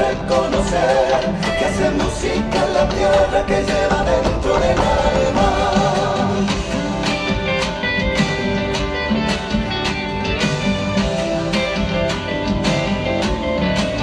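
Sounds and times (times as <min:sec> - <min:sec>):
person singing: 0:00.0 - 0:07.8
folk ensemble music: 0:00.0 - 0:14.0
strummed guitar: 0:00.0 - 0:14.0.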